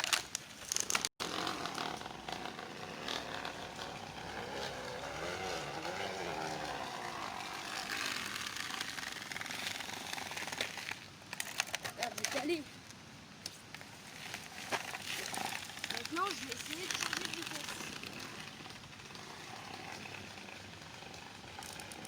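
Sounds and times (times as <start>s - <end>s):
bottle rattling on bicycle wheel: 13.7s - 22.0s.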